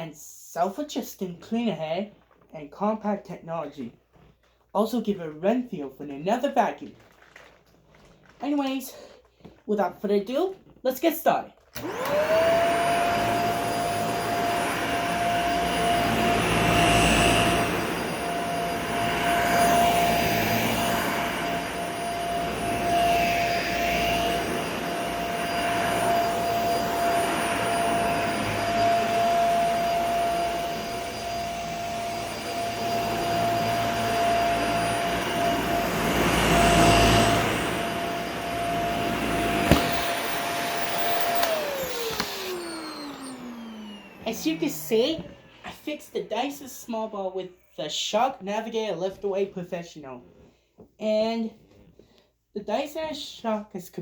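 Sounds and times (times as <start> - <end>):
vacuum cleaner running: 11.8 - 46.6.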